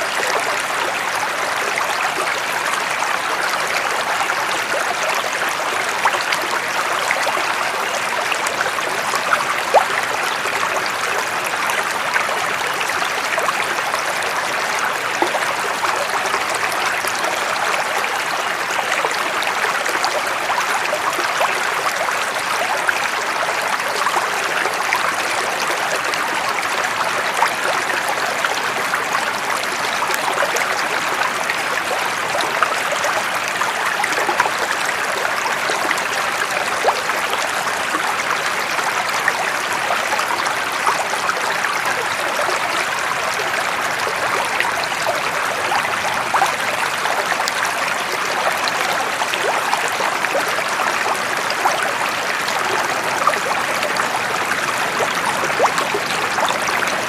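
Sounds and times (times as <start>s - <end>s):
running water: 0.0s - 57.0s.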